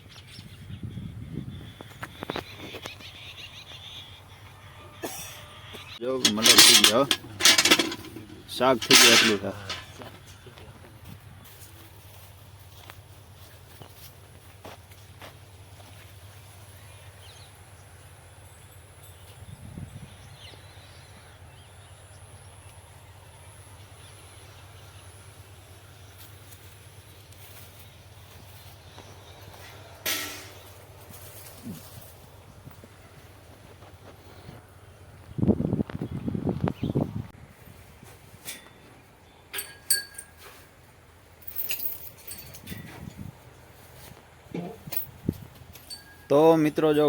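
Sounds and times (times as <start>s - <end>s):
light metallic clinks: 6.2s - 10.4s, 18.4s - 20.0s, 39.5s - 40.7s, 41.4s - 43.4s, 44.6s - 47.0s.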